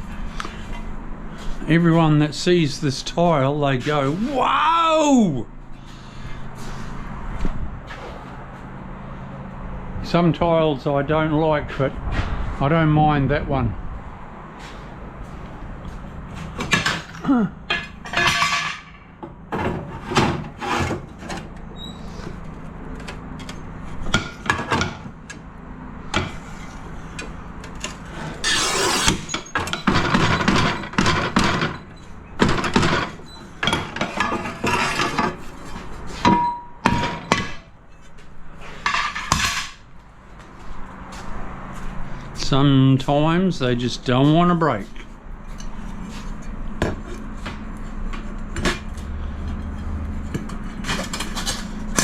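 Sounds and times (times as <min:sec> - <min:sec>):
tile scraping: 0:34.0 - 0:35.4.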